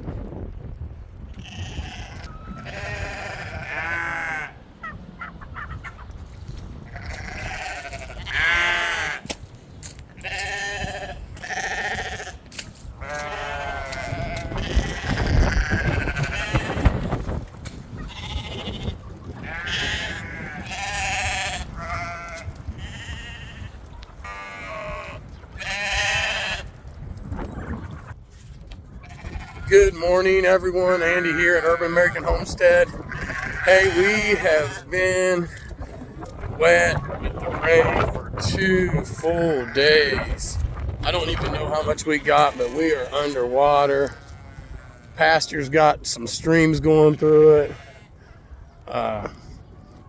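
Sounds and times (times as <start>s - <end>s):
sheep bleating: 1.3s - 4.6s, 6.9s - 9.3s, 10.2s - 17.0s, 17.9s - 26.8s, 29.0s - 30.0s, 30.6s - 40.5s, 41.1s - 45.4s, 46.5s - 49.4s.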